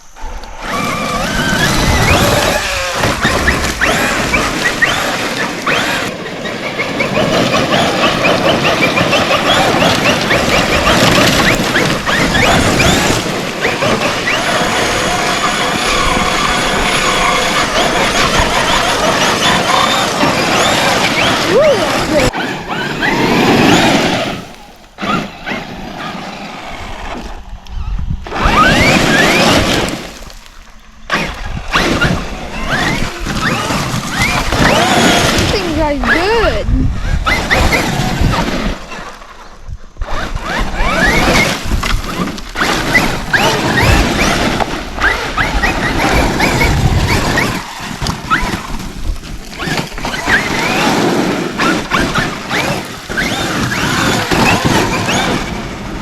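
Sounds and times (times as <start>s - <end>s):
electric motor whining: 0.0s - 56.0s
tyre and ground noise: 0.0s - 56.0s.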